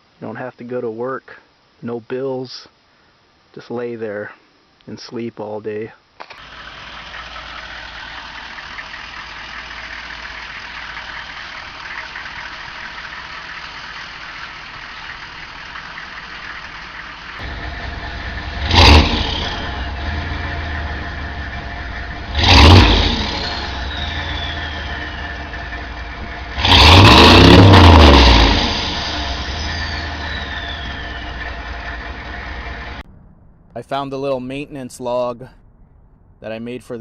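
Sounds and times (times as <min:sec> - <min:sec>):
diesel engine idling: 0:06.4 - 0:33.0
engine revving: 0:06.4 - 0:33.0
falling turbo whistle: 0:17.5 - 0:32.7.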